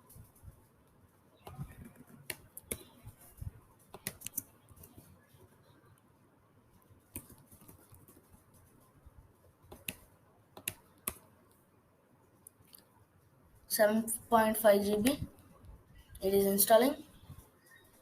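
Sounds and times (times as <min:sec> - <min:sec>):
laptop keys and touchpad clicks: 0:03.9 - 0:04.9, 0:07.1 - 0:08.3, 0:09.7 - 0:11.3.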